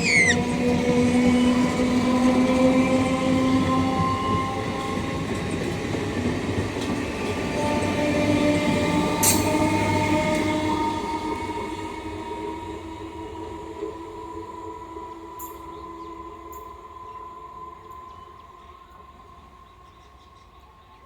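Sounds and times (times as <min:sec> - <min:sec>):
train wheels rumbling on track: 0:00.0 - 0:11.8.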